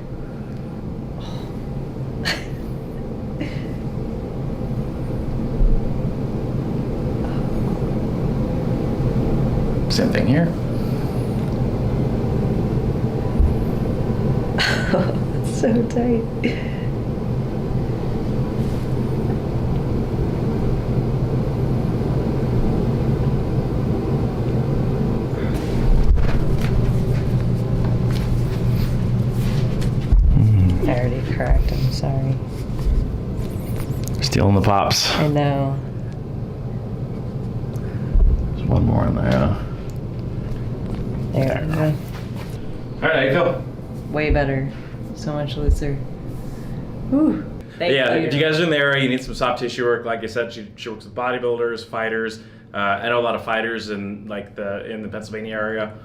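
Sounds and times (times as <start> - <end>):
steady low rumble: 0.0 - 47.7
steady low hum: 0.0 - 56.0
dull low thump: 30.1 - 30.4, 38.1 - 38.6, 45.6 - 45.9.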